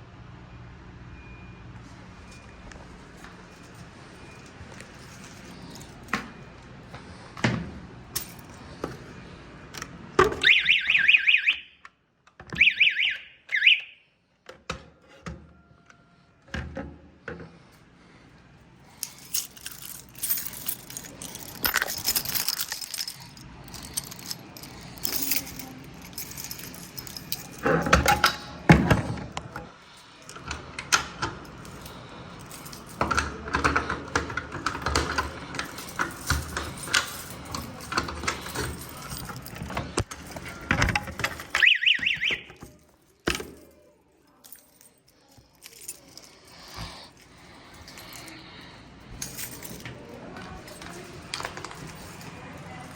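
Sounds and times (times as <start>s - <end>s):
fire alarm horn buzzing: 10.4s - 11.8s, 12.6s - 14.1s, 41.6s - 42.6s
clatter of clicks and rattles: 19.0s - 29.7s, 30.3s - 43.8s.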